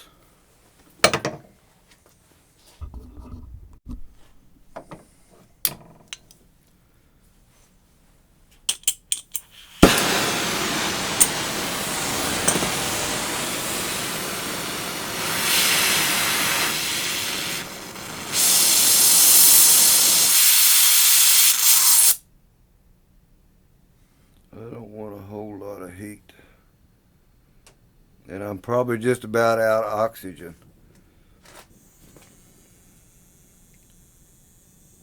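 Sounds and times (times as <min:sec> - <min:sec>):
torch igniter clicks: 0:08.7 - 0:19.8
gas torch lighting with a pop: 0:08.7 - 0:22.2, 0:31.9 - 0:34.2
gas torch hissing: 0:09.6 - 0:22.2, 0:31.7 - 0:35.0.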